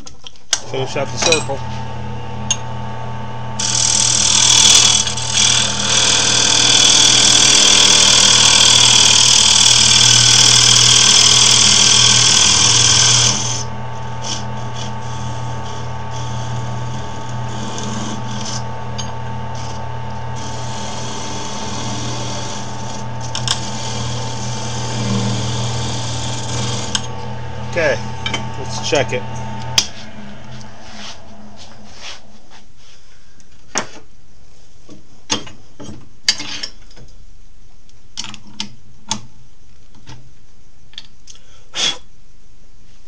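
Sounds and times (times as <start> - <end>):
wood lathe motor humming: 0.6 - 32.1
turning tool scraping wood: 3.6 - 18.8, 19.5 - 32.7.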